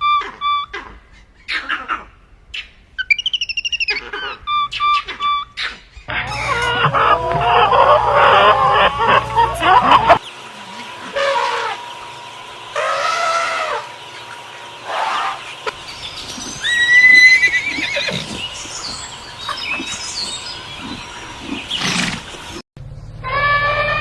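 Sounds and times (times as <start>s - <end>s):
horse neighing: 16.6s - 18.4s.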